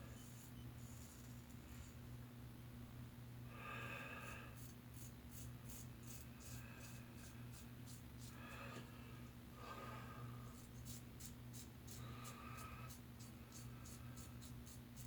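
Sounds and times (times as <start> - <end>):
low electrical hum: 0.0 - 15.0
razor scraping stubble: 4.2 - 8.4, 10.5 - 15.0.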